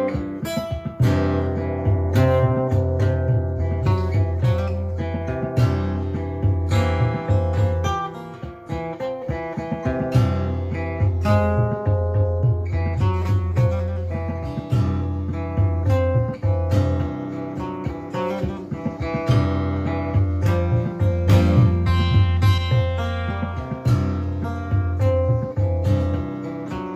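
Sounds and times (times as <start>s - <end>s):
acoustic guitar music: 0.0s - 26.9s
pulsing bass line: 18.5s - 26.3s.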